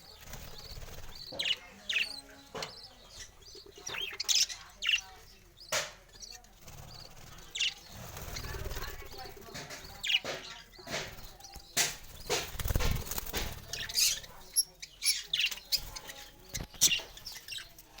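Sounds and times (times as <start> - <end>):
small birds chirping: 0.0 - 18.0
rustling and fluttering: 6.4 - 10.2, 10.9 - 14.4.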